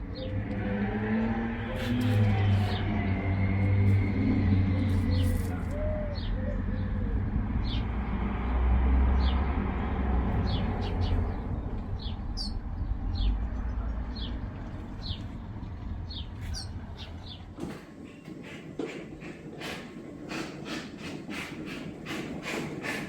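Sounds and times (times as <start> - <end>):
small bird chirping: 12.0 - 12.6, 16.1 - 17.4.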